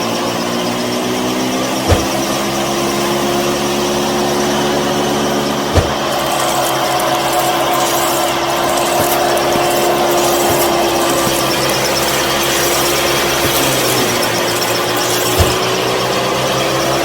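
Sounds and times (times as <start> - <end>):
sharp knock: 1.9 - 2.3, 5.7 - 6.2, 15.4 - 15.8.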